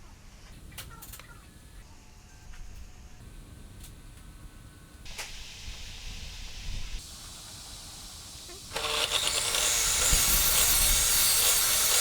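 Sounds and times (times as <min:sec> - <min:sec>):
table saw motor whine: 0:08.7 - 0:12.0.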